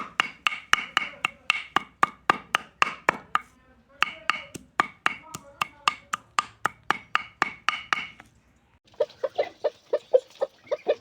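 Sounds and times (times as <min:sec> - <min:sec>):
knife chopping on wooden board: 0:00.0 - 0:08.3.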